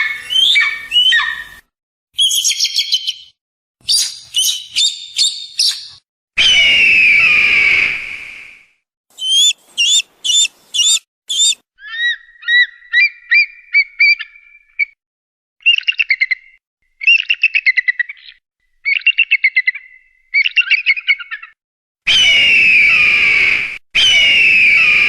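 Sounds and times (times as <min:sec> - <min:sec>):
kite calls: 0:09.2 - 0:11.6.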